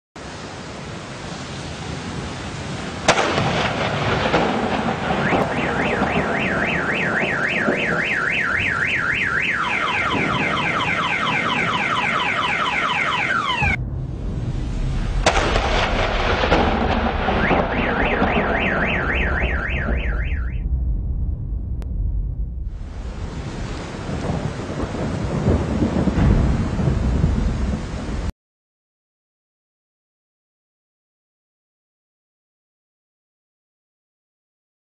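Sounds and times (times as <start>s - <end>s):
thunder crack: 3.0s - 28.3s
car alarm warbling: 5.1s - 13.8s, 17.2s - 20.7s
heavy rain hissing: 22.7s - 28.3s.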